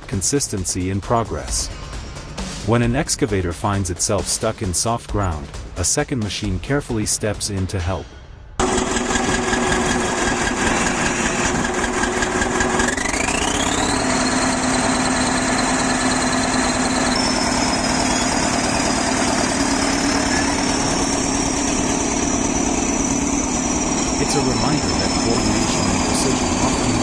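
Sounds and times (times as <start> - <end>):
engine whine: 7.9 - 27.0
heavy machine engine running: 8.6 - 27.0.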